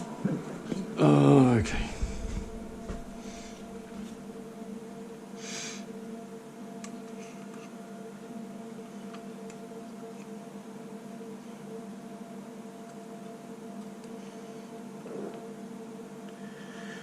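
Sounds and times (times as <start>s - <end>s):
low electronic hum: 0.0s - 16.7s
short breathy hiss: 5.4s - 5.9s.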